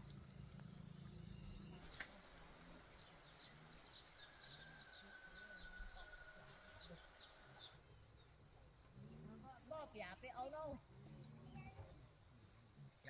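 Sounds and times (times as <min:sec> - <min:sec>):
low hum: 0:00.0 - 0:09.7
bird chirping: 0:00.0 - 0:12.2.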